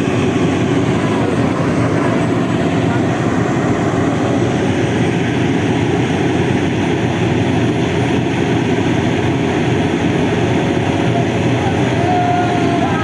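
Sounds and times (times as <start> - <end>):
heavy diesel engine rumbling: 0.0 - 13.0.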